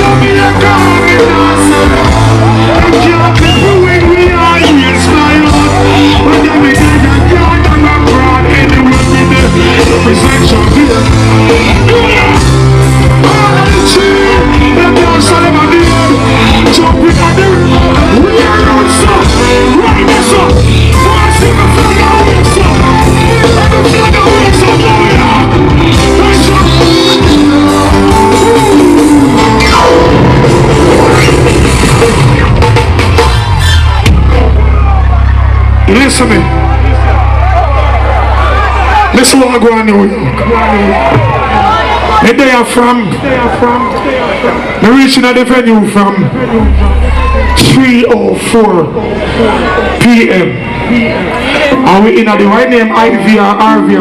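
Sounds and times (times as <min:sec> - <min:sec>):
person singing: 0:00.0 - 0:32.6
reggae music with heavy bass: 0:00.0 - 0:54.0.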